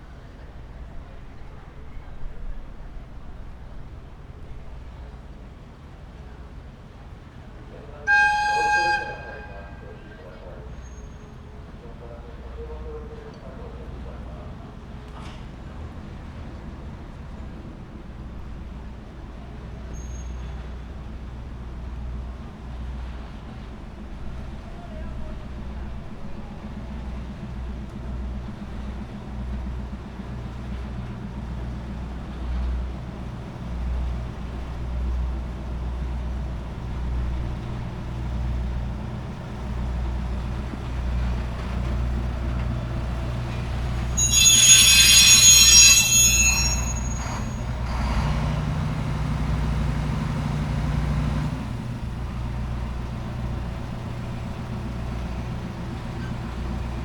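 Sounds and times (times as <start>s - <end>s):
diesel train engine rumbling: 0.0s - 57.0s
steel wheels squealing on rails: 7.8s - 14.0s, 17.5s - 38.5s, 39.3s - 49.5s, 53.4s - 57.0s.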